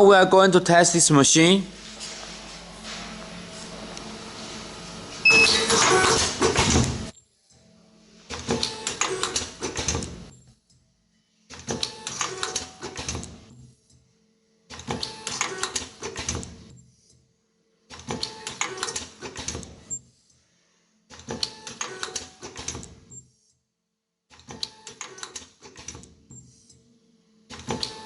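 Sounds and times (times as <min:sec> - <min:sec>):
machine clattering and clicking: 0:08.3 - 0:10.4.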